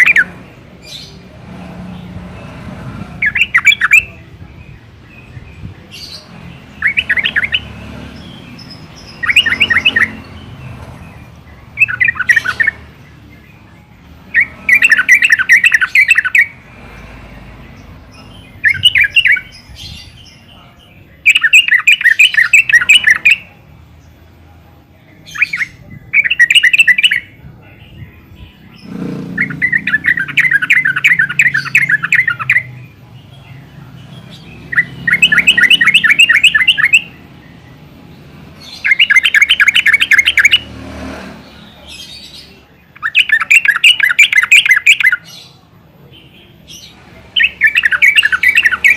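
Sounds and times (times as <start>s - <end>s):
bird chattering song: 0.0s - 24.2s, 25.0s - 48.9s.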